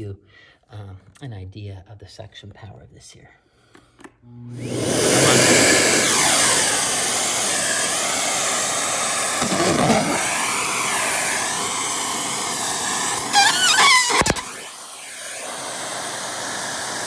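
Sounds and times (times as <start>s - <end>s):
vacuum cleaner motor whine: 4.3s - 17.0s.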